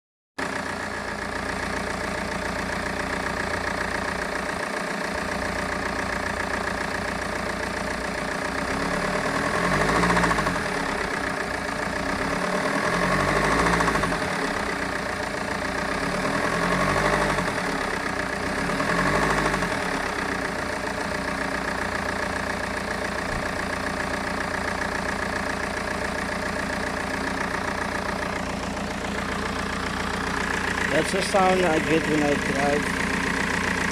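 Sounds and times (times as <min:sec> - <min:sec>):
diesel engine idling and revving: 0:00.4 - 0:33.9
engine knocking noise: 0:00.4 - 0:33.9.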